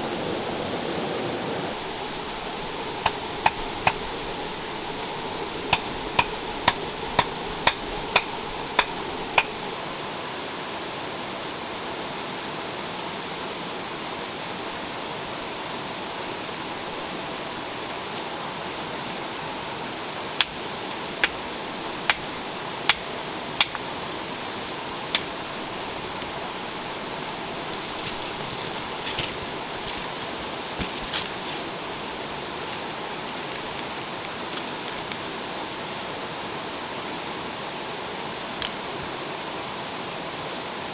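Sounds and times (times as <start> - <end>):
river running: 0.0 - 40.9
sharp knocks: 5.6 - 9.7.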